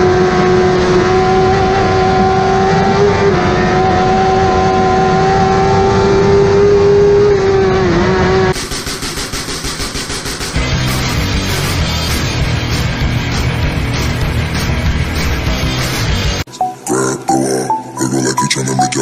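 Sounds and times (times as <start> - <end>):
engine at high revs: 0.0 - 16.4
rapidly pulsing sound: 8.6 - 12.4.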